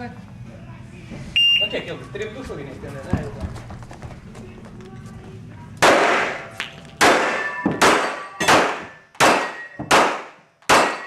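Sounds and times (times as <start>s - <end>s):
metallic clangs of steel targets: 5.8s - 11.0s.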